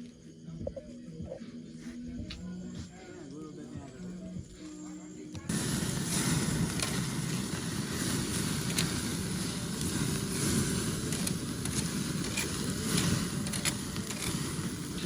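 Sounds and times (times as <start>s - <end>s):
fire crackling: 0.0s - 15.0s
low rumbling noise: 5.4s - 15.0s
meat sizzling over fire: 5.5s - 15.0s.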